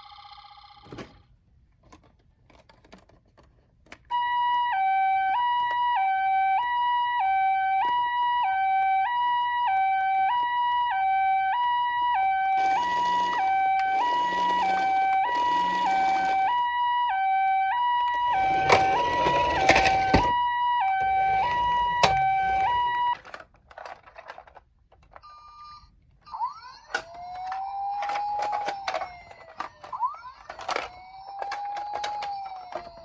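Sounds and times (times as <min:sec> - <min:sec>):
toy siren: 0:00.0 - 0:01.0, 0:04.1 - 0:23.3, 0:25.2 - 0:33.0
toy clicks and clatter: 0:23.2 - 0:25.7, 0:26.4 - 0:33.0.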